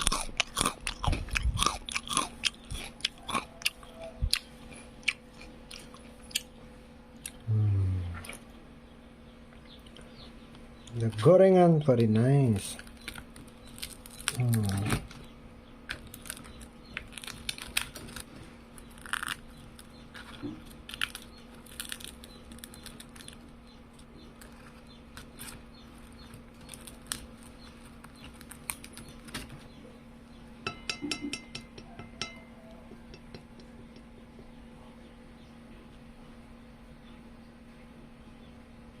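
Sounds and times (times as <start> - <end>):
steady low hum: 0.0 - 39.0
crinkling and clicking: 12.7 - 15.2, 15.9 - 29.7.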